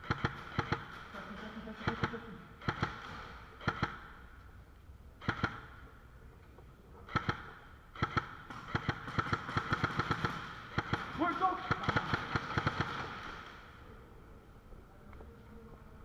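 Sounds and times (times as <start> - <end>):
airsoft guns firing: 0.0 - 4.2, 5.2 - 5.8, 7.1 - 13.9.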